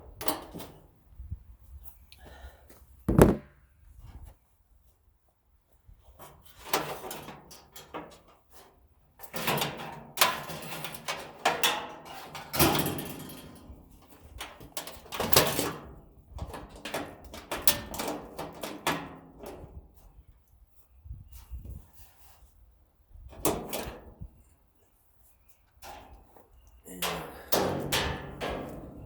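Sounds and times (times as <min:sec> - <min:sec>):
sharp knocks: 0:03.1 - 0:03.4.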